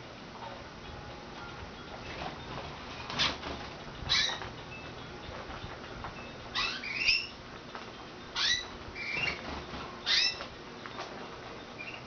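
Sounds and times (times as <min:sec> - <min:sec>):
canaries chirping: 0:03.1 - 0:04.5, 0:06.4 - 0:07.4, 0:08.3 - 0:10.5, 0:11.8 - 0:12.0.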